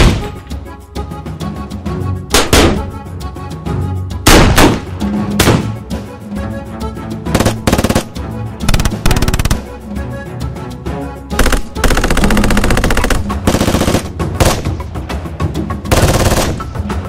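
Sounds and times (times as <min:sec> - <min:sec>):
background music: 0:00.0 - 0:17.0
rifle single shots: 0:04.3 - 0:05.8
automatic gunfire bursts: 0:07.4 - 0:09.7, 0:11.4 - 0:14.7, 0:15.9 - 0:16.7.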